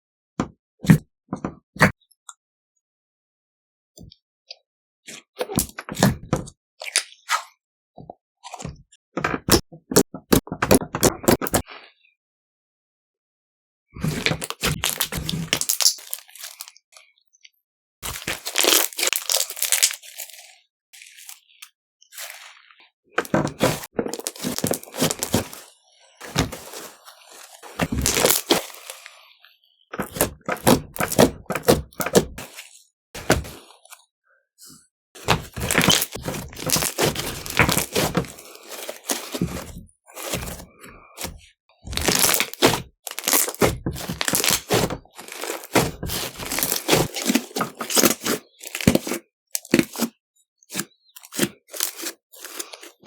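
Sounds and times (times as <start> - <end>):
slime crackling and popping: 14.4 - 16.7, 18.0 - 20.4, 23.6 - 25.6, 27.8 - 29.0, 35.4 - 39.7, 42.0 - 50.0.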